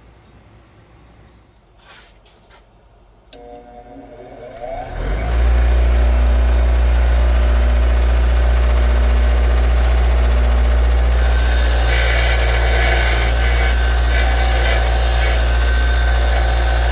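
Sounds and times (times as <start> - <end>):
bench grinder motor humming: 3.4 - 16.9
wire wheel scrubbing metal: 10.2 - 16.9.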